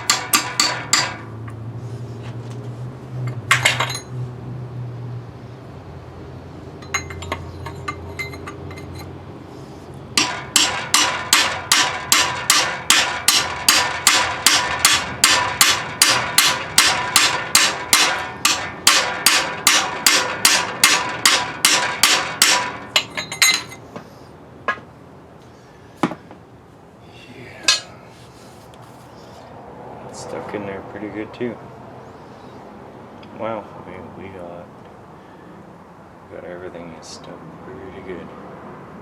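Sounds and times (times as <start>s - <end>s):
hammer beating on metal: 0.0s - 1.3s, 10.2s - 23.8s
tools clinking: 3.2s - 4.2s, 6.8s - 9.1s, 22.8s - 23.9s, 27.6s - 28.0s.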